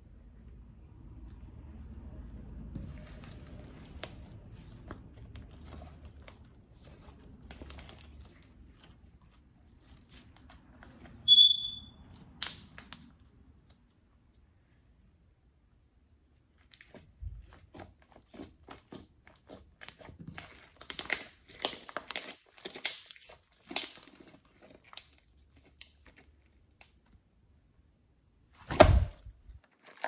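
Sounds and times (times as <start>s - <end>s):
slime being handled: 2.6s - 11.3s, 16.4s - 27.2s
short high whistle-like tone: 11.3s - 12.0s.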